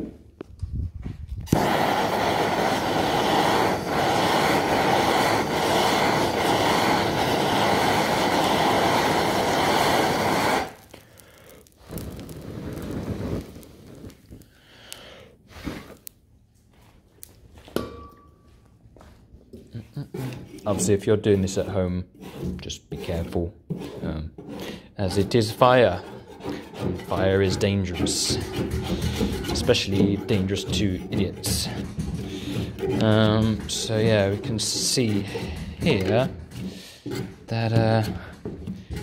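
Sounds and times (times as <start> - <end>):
blowtorch flame burning: 1.2 - 16.2, 25.0 - 39.0.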